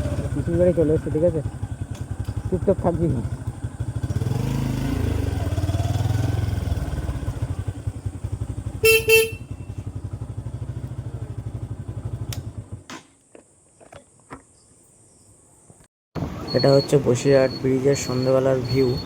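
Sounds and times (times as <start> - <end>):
motorcycle engine running: 0.0 - 12.9
horn honks: 8.8 - 9.9.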